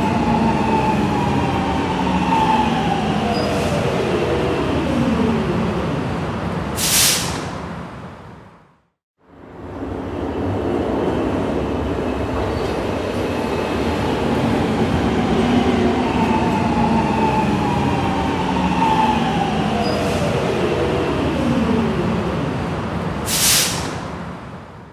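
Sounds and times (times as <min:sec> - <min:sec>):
short hiss: 0:06.8 - 0:07.5, 0:23.3 - 0:24.0.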